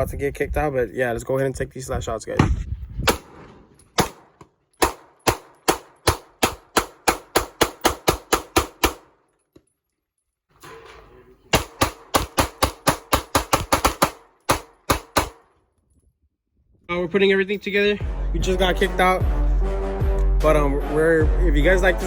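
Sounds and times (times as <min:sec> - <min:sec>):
rapid pistol fire: 0:03.1 - 0:09.2, 0:11.5 - 0:15.5.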